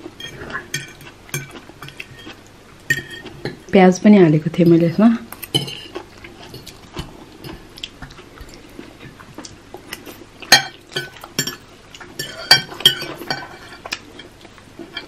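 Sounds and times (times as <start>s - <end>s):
soft chewing: 0.1s - 3.7s, 5.3s - 15.0s
cutlery clinking on a plate: 0.2s - 3.6s, 10.5s - 15.0s.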